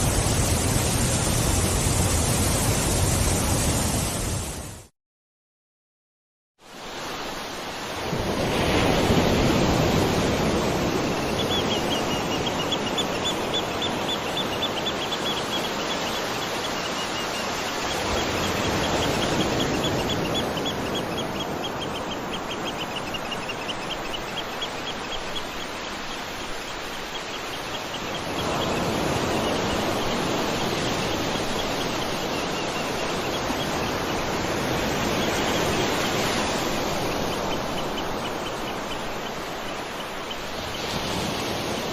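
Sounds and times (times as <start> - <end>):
waterfall roaring: 0.0 - 4.6
bird chirping rapidly: 11.2 - 34.2.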